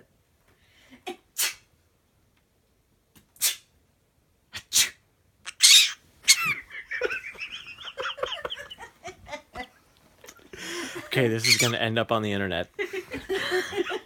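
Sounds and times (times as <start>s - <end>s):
parrot imitating coughs and sneezes: 1.4s - 1.7s, 4.5s - 6.6s, 11.4s - 11.8s
parrot warbling chatter: 5.5s - 6.7s, 11.4s - 11.8s.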